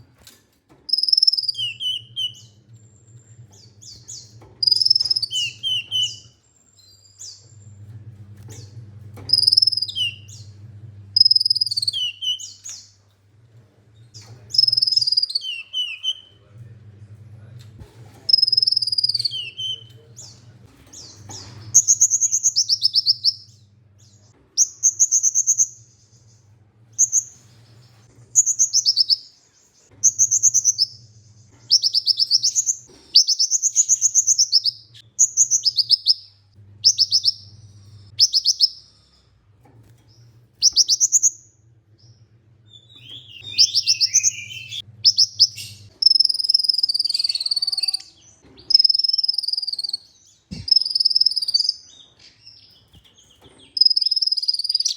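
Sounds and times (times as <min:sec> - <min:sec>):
sunbird singing high trills: 0:00.9 - 0:02.6, 0:03.9 - 0:06.4, 0:09.3 - 0:10.5, 0:11.2 - 0:12.9, 0:18.3 - 0:19.9, 0:21.8 - 0:23.6, 0:31.7 - 0:37.6, 0:42.9 - 0:52.7, 0:53.7 - 0:54.9.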